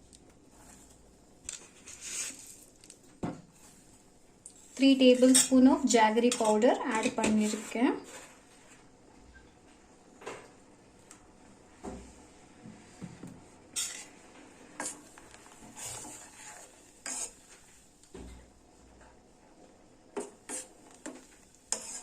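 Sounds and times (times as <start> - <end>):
spoon scraping a pot: 5.0 - 8.4, 13.8 - 14.2, 14.8 - 17.5, 20.2 - 22.0.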